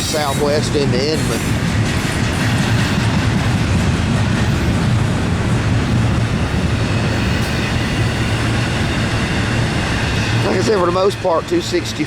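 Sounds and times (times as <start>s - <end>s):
freight train rolling past: 0.0s - 12.0s.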